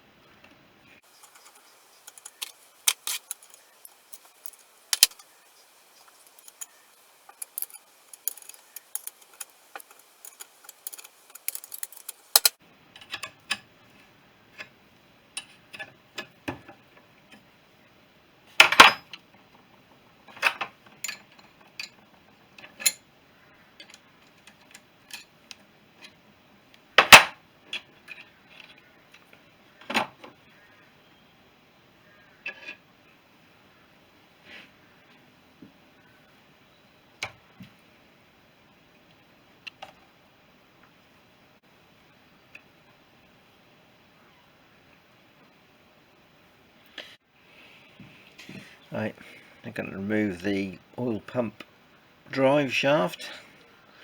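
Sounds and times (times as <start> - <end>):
metal tools clinking: 1.1 - 12.6.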